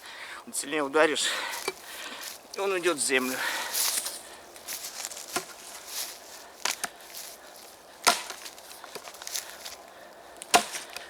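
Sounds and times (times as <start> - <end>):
axe chopping wood: 5.1 - 5.7, 6.6 - 7.0, 8.0 - 9.4, 10.4 - 11.0.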